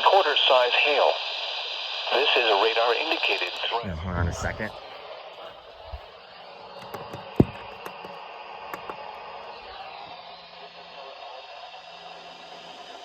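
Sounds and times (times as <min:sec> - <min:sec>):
radio static hiss: 0:00.0 - 0:06.6.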